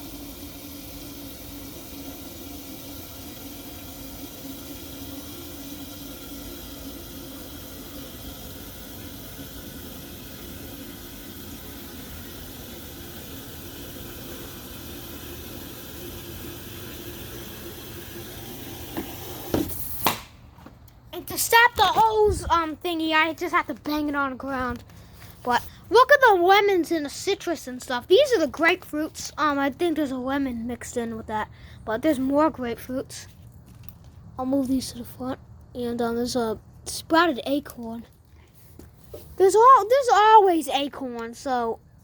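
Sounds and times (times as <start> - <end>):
hose water filling container: 0.0 - 20.2
sharp knocks: 19.5 - 20.4.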